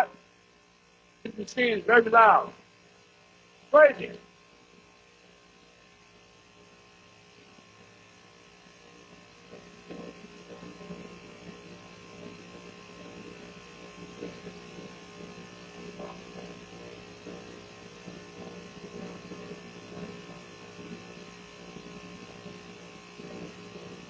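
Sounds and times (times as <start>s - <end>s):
air conditioning unit humming: 0.0s - 10.4s.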